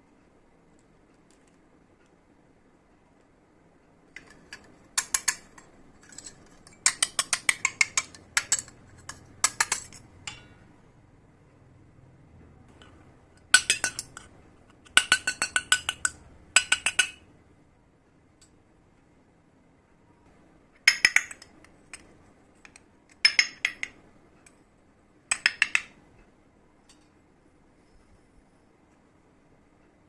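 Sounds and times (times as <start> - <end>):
toy kitchenware clinking: 4.2 - 10.7, 12.8 - 17.2, 20.9 - 22.1, 22.7 - 24.0, 25.3 - 25.9.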